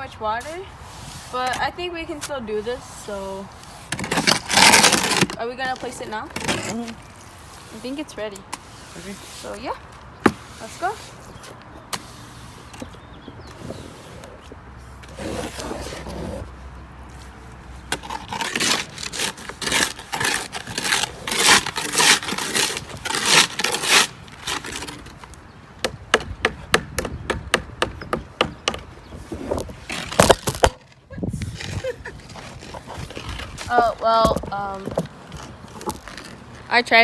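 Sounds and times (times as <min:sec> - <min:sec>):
tool scraping wet concrete: 0:00.3 - 0:16.5, 0:17.2 - 0:25.3.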